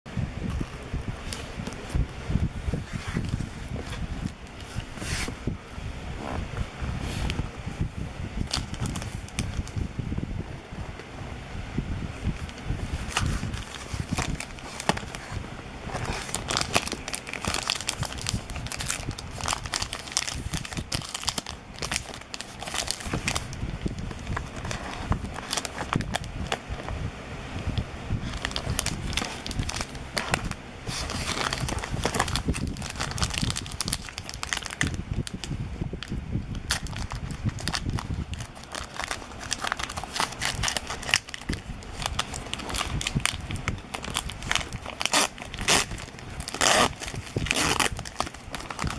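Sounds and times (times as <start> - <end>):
plastic wrapper crinkling and tearing: 8.4 - 9.8, 12.4 - 26.9, 28.2 - 48.9.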